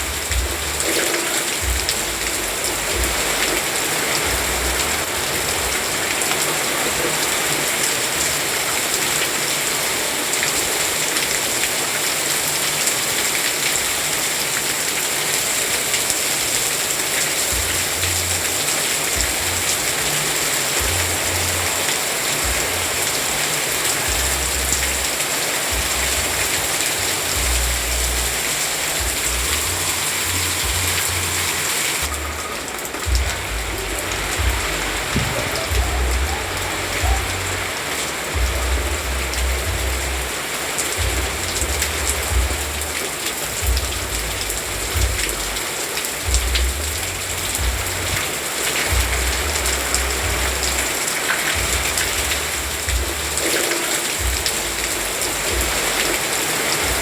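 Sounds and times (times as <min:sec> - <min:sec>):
low rumbles: 0:00.0 - 0:01.0, 0:01.6 - 0:05.9, 0:25.7 - 0:40.4
heavy rain falling: 0:00.0 - 0:57.0.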